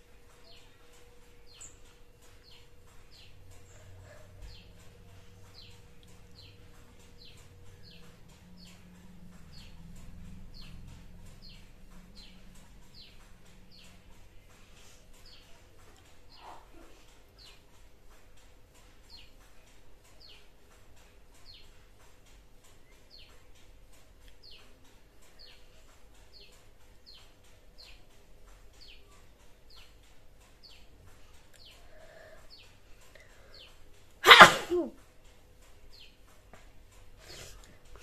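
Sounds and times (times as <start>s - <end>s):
bird chirping: 0.0s - 17.8s, 18.8s - 21.8s, 22.6s - 34.9s, 35.8s - 36.3s
person sneezing: 34.2s - 35.0s.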